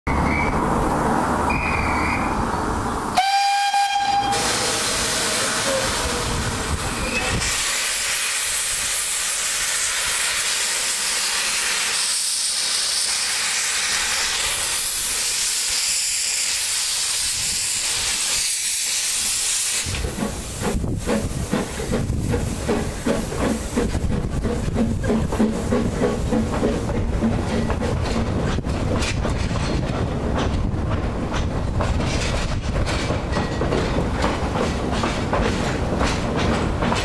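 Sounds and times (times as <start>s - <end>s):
steam locomotive hissing: 3.2s - 29.2s
locomotive chuffing beat: 19.8s - 37.0s.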